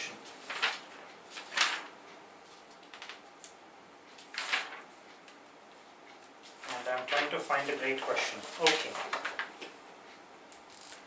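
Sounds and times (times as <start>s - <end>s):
paper rustling: 0.3s - 3.2s, 4.2s - 4.9s, 6.5s - 9.5s.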